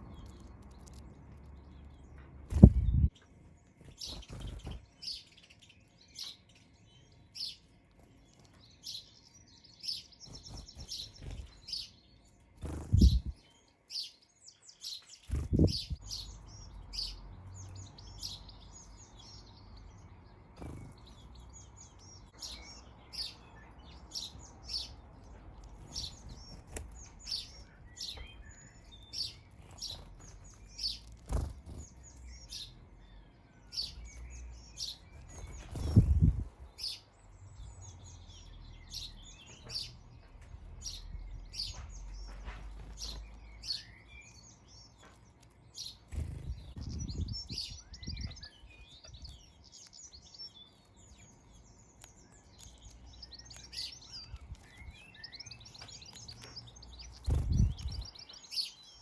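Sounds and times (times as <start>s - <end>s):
sparrows chirping and twittering: 0.0s - 59.0s
low thumps: 2.6s - 3.1s.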